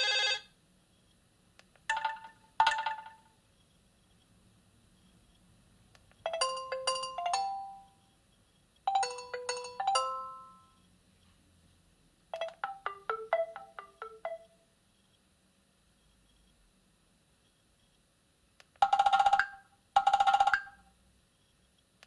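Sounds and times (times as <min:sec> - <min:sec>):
phone ringtone notes: 0:00.0 - 0:00.4, 0:06.3 - 0:08.0, 0:08.9 - 0:10.8, 0:12.4 - 0:14.5, 0:18.8 - 0:20.8.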